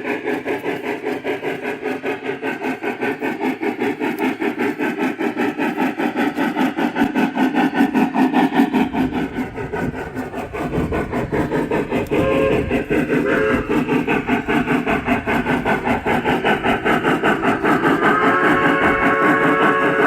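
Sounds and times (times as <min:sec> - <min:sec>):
steam locomotive chuffing: 0:00.0 - 0:20.0
train whistle: 0:12.1 - 0:14.3, 0:17.9 - 0:20.0.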